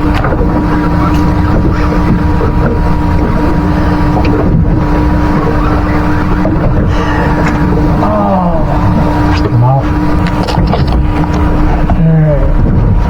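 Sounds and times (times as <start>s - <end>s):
boat motor humming: 0.0s - 13.0s
water noise: 0.0s - 13.0s
wind: 0.0s - 13.0s.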